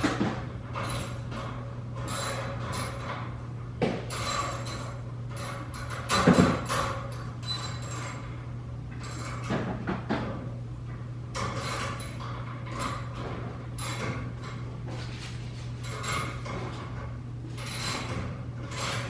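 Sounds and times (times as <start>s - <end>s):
steady low hum: 0.0s - 19.0s
objects knocking and rattling: 3.8s - 7.2s.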